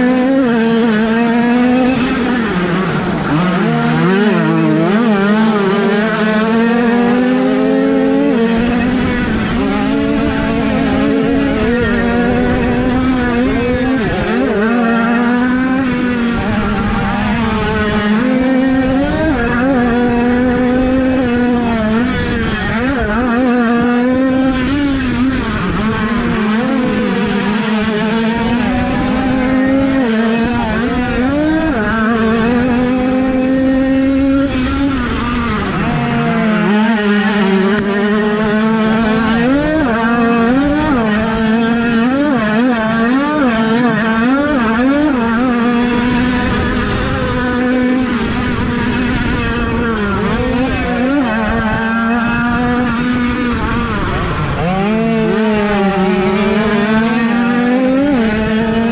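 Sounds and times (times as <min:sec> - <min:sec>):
motocross bikes revving: 0:00.0 - 0:58.9.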